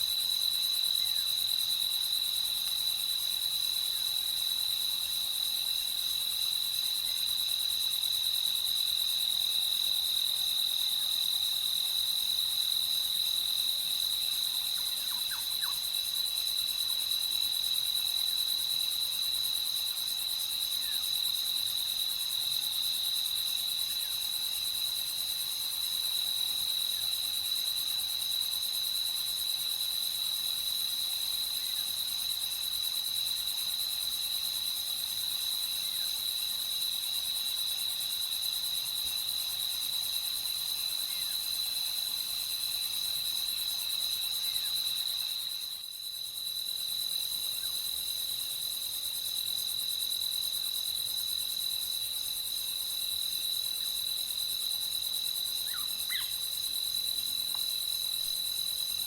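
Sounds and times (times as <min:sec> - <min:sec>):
crickets trilling: 0:14.2 - 0:59.0.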